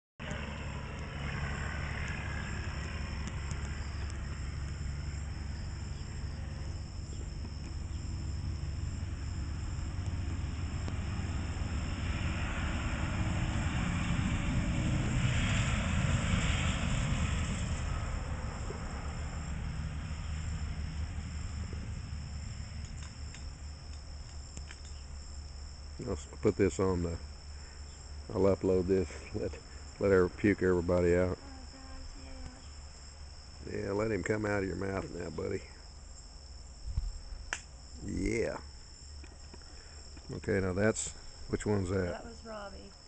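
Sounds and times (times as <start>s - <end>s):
passing vehicle rumble: 0.2s - 35.9s
crickets and insects chirping: 0.2s - 43.0s.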